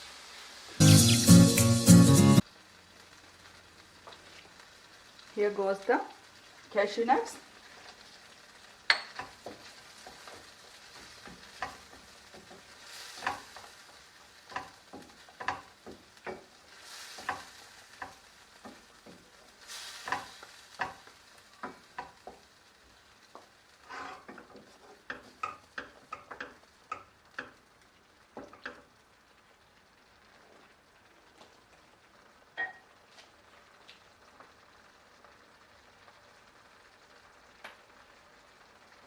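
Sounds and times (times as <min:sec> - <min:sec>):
light sizzle: 0:00.0 - 0:39.0
utensil scraping a frying pan: 0:08.9 - 0:22.4, 0:23.7 - 0:27.6.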